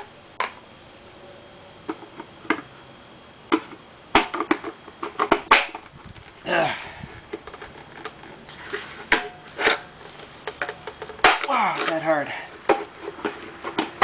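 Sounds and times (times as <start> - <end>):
person grunting: 6.4 - 7.0, 11.5 - 12.5.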